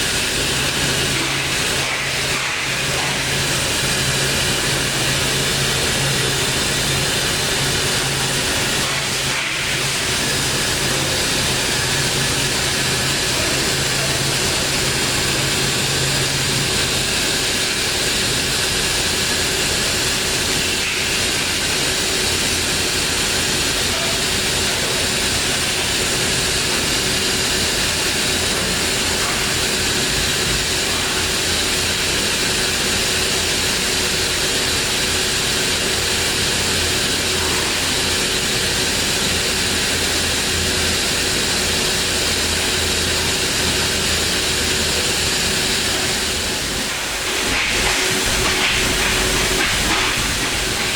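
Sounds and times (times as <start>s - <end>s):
machine hiss with steady tone: 0.0s - 50.9s
low machine hum: 43.2s - 50.9s.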